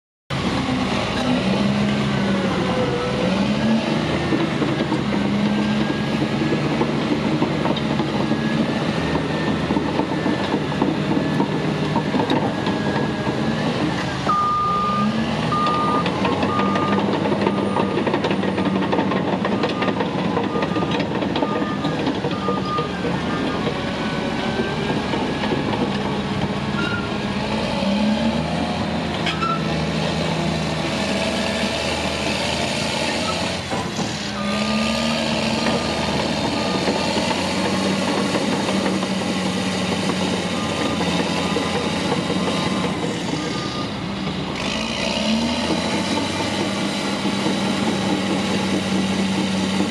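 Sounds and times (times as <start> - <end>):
diesel engine running: 0.3 - 49.9
reversing alarm beeps: 14.2 - 18.0, 19.6 - 23.4, 40.4 - 41.4.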